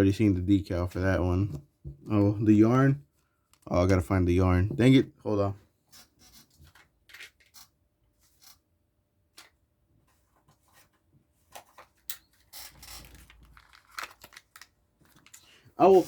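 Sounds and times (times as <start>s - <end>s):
wrappers rustling: 12.5s - 16.0s.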